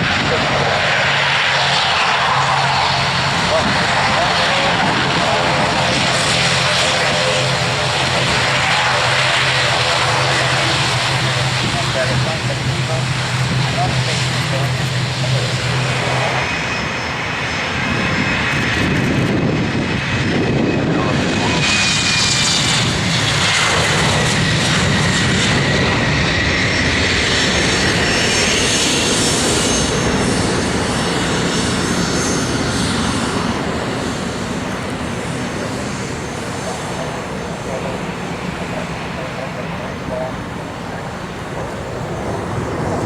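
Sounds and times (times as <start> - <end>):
airliner engines passing: 0.0 - 43.0.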